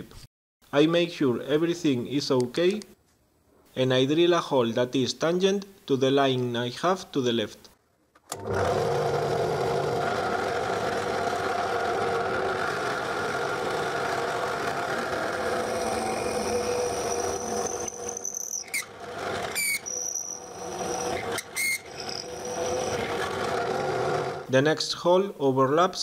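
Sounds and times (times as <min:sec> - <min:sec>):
drill press boring into wood: 0:08.3 - 0:24.5
short high squeals: 0:14.9 - 0:24.4.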